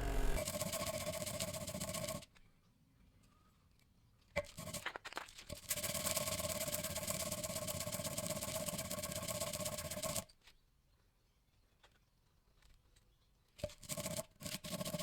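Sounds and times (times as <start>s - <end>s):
small power tool whining: 0.0s - 0.4s.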